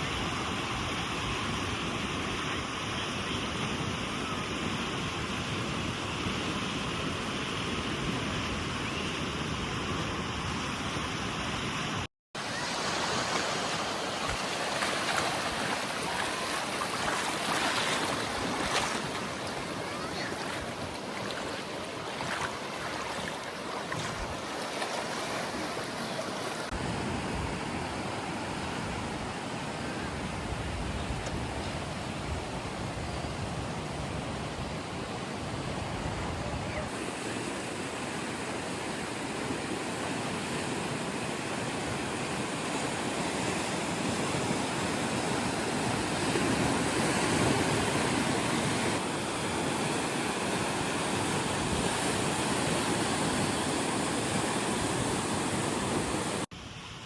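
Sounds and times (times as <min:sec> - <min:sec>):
steady rushing outdoor noise: 0:08.0 - 0:31.6.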